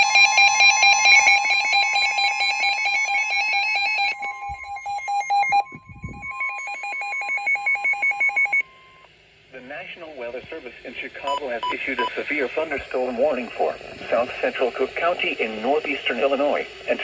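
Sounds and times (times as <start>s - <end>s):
rapid pulsing alarm beeps: 0.0s - 9.1s, 11.2s - 13.6s
weather radio alarm tone: 0.0s - 9.1s, 11.2s - 14.6s.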